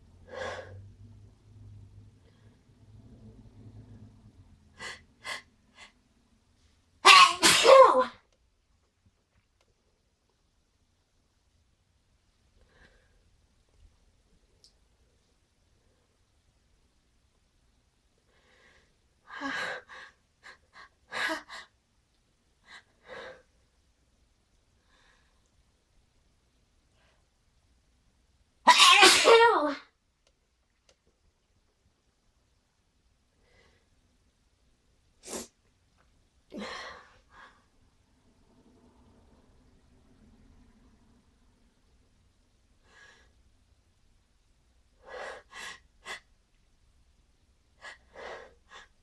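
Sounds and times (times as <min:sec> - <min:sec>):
person sneezing: 0:07.1 - 0:08.1, 0:28.7 - 0:29.8, 0:35.2 - 0:35.6.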